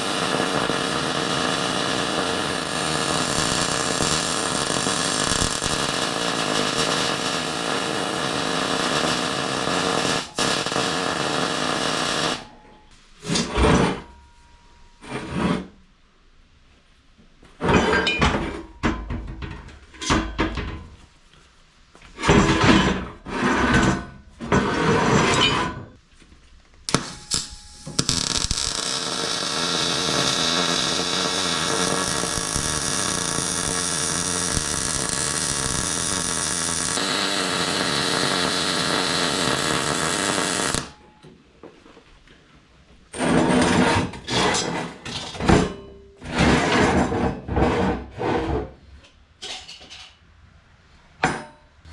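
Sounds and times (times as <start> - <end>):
rubbing or scraping: 15.0 - 15.8, 46.2 - 49.0.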